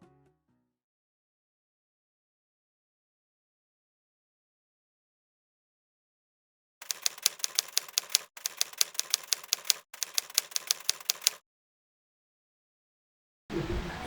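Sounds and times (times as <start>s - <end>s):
typewriter keys clacking: 6.8s - 11.4s.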